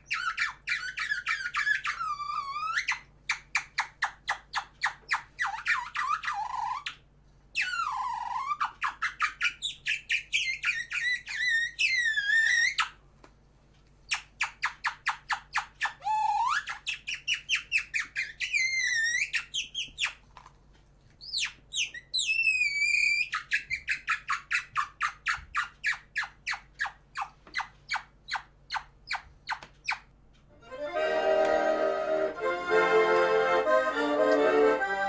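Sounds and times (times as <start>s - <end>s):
person whistling like birdsong: 16.0s - 20.2s.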